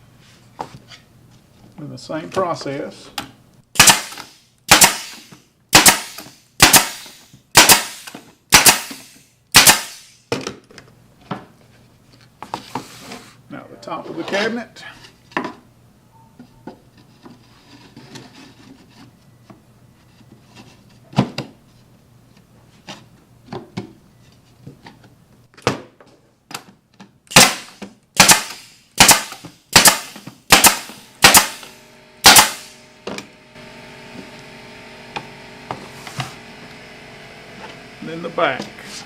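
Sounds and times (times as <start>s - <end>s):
pneumatic stapler firing: 3.8s - 10.3s, 27.3s - 33.3s
steady hum: 27.3s - 39.0s.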